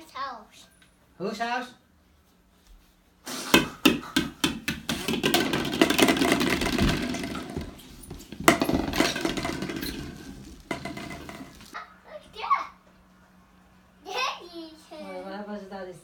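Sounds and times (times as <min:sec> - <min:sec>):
sharp knocks and clattering: 0:03.6 - 0:11.8.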